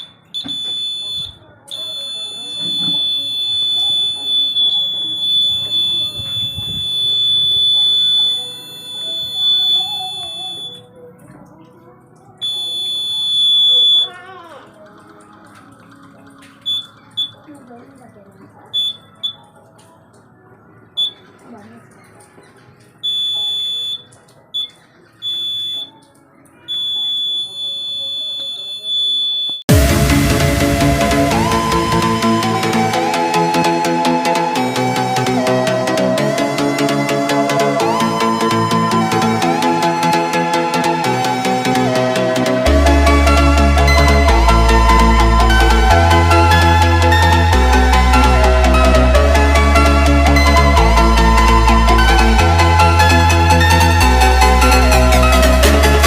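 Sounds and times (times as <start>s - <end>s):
high-pitched buzzer beep: 0.0s - 10.8s, 12.4s - 14.1s, 26.7s - 29.7s.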